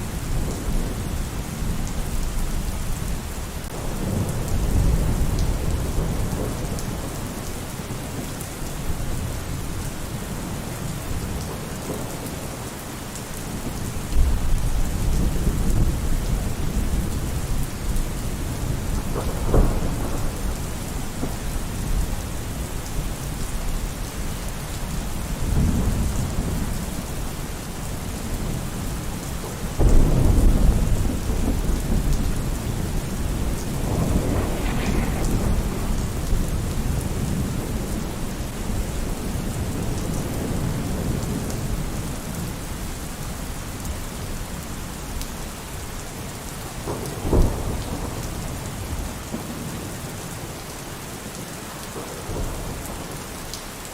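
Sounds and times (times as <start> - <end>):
heavy rain: 0.0 - 53.9
thunder rumbling: 13.5 - 24.0, 24.8 - 42.5
sharp thunder crack: 29.8 - 38.8.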